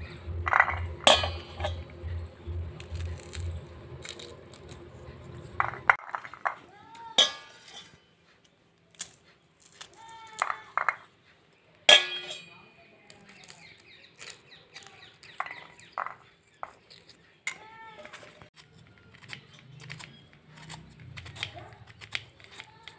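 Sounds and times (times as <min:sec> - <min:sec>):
loud metal clang: 0:00.4 - 0:02.2, 0:07.2 - 0:07.9, 0:11.9 - 0:12.6
metal utensils clinking: 0:00.4 - 0:06.6, 0:07.2 - 0:08.0, 0:11.9 - 0:12.7.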